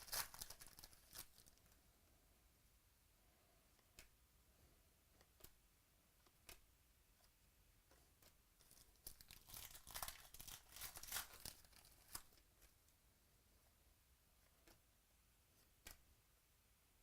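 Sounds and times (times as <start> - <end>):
card pack wrapper tearing: 0.0 - 1.6, 8.7 - 12.4.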